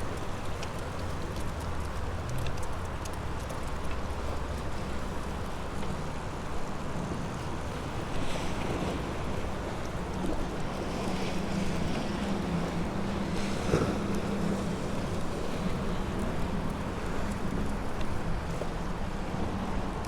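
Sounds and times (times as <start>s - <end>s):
waves washing against concrete: 0.0s - 20.0s.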